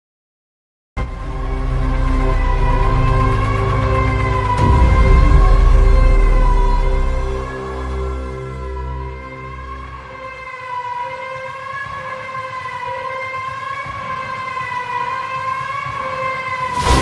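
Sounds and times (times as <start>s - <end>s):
wavering synth tone: 1.0s - 9.8s
bass-heavy music: 1.0s - 11.2s, 16.6s - 17.0s.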